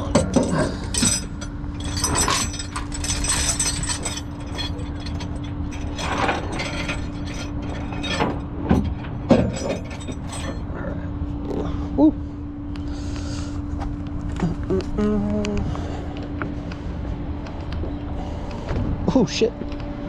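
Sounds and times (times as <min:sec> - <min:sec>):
metal parts clanking: 0:00.0 - 0:10.8
winch and hydraulics humming: 0:00.0 - 0:20.0.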